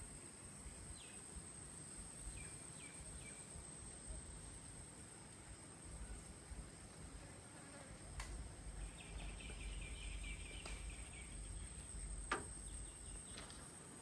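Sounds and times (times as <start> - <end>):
insect chirping trill: 8.7 - 13.6.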